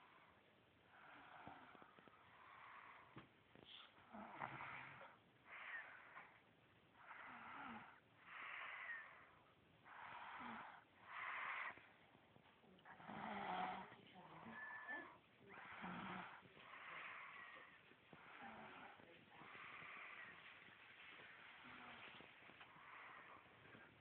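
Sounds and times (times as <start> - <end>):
person snoring: 7.0 - 9.3, 9.9 - 11.8, 12.9 - 20.4.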